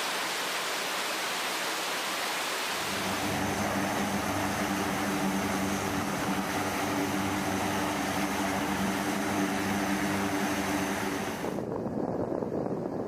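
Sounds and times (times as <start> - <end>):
jet engines roaring: 2.8 - 11.6
low hum of steady tones: 2.8 - 11.7.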